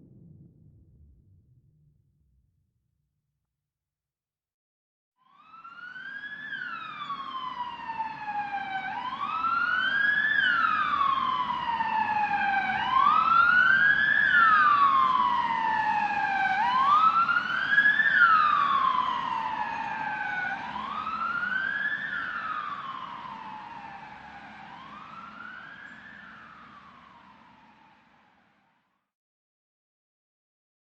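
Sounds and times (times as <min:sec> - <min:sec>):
low vehicle rumble: 0:00.0 - 0:02.6
siren wailing: 0:05.3 - 0:28.2.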